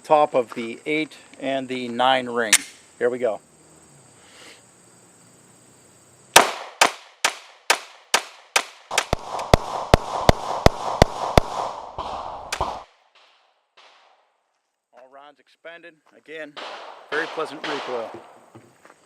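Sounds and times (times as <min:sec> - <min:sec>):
pistol shots: 0:06.4 - 0:14.2, 0:16.6 - 0:18.4.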